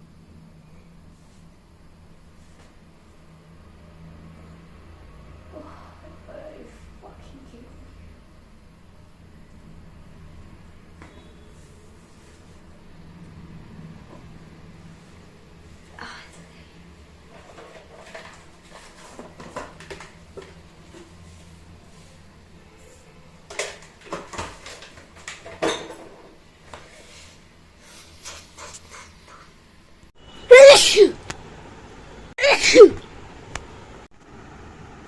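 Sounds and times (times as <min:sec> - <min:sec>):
person sneezing: 0:30.5 - 0:31.2, 0:32.4 - 0:33.0.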